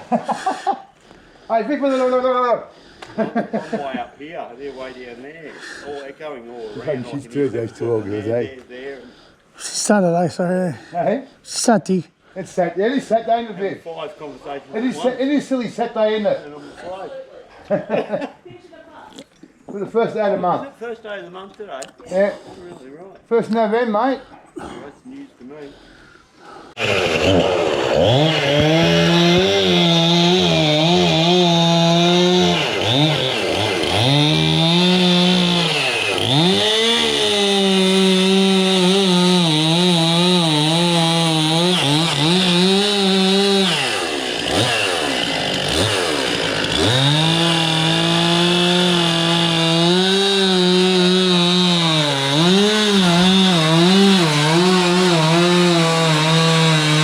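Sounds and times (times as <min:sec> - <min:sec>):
chainsaw cutting timber: 0:26.8 - 0:57.0.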